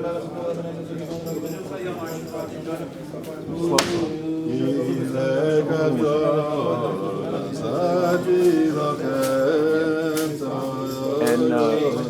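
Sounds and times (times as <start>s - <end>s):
men singing in unison: 0.0s - 12.0s
sharp claps or knocks: 3.7s - 4.5s.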